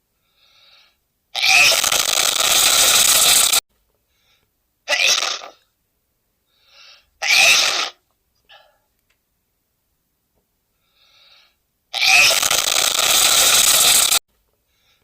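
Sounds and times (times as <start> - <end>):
faint gasping breaths: 0.2 - 1.0, 6.4 - 7.2, 8.5 - 8.9, 10.7 - 11.6, 14.6 - 15.0
man sneezing: 7.2 - 8.6.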